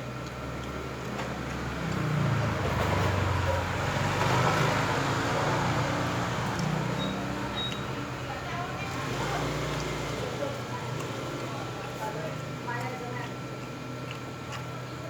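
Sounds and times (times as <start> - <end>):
vehicle passing by: 1.7 - 7.6.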